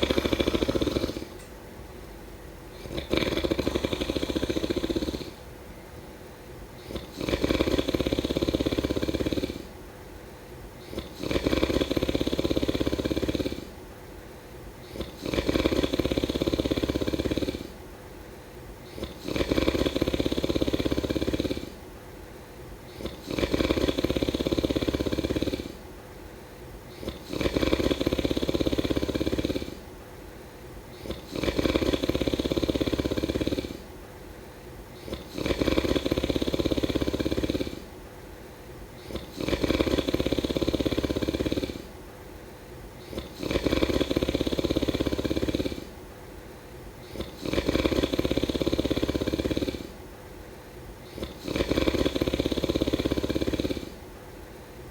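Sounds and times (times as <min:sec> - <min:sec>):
person snoring: 0:00.0 - 0:01.5, 0:02.7 - 0:05.4, 0:06.8 - 0:09.7, 0:10.8 - 0:13.8, 0:14.8 - 0:17.8, 0:18.8 - 0:21.8, 0:22.9 - 0:25.8, 0:26.9 - 0:29.8, 0:30.9 - 0:33.9, 0:35.0 - 0:37.9, 0:39.0 - 0:41.9, 0:43.0 - 0:46.0, 0:47.0 - 0:50.0, 0:51.0 - 0:54.0
quiet breaths: 0:00.0 - 0:54.9.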